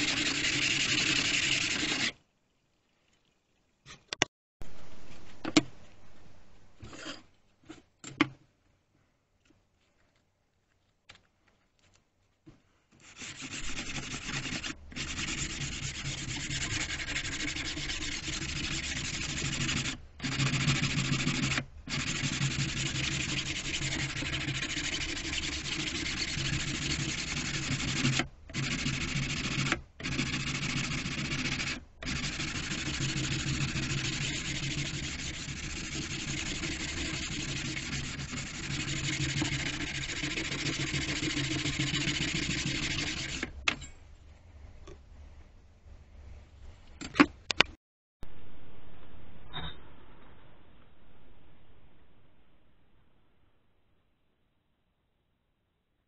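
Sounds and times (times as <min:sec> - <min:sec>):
electric sander rasping: 0:13.2 - 0:19.9.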